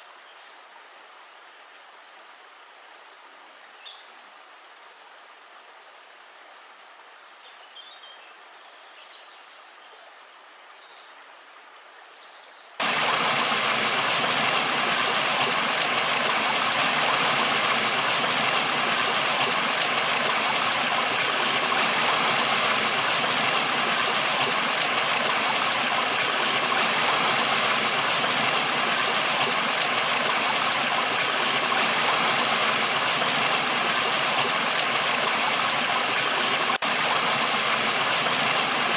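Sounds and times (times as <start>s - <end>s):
rushing river water: 12.8s - 38.9s.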